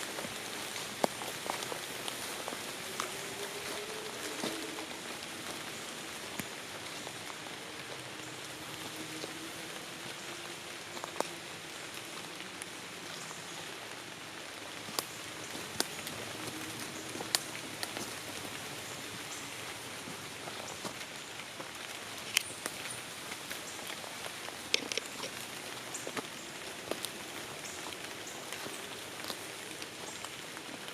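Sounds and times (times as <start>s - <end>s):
light rain on leaves: 0.0s - 30.9s.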